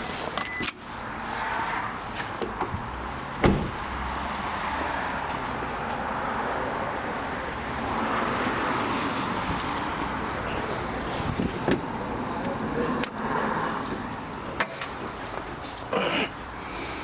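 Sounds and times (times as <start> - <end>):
motor vehicle noise: 0.0 - 17.0.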